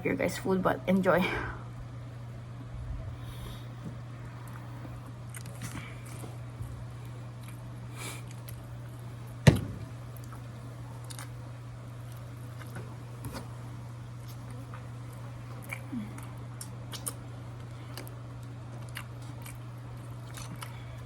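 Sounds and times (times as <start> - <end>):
steady low hum: 0.0 - 21.0
chewing and handling clicks: 5.3 - 6.2, 14.2 - 21.0
sharp knock: 9.5 - 9.8.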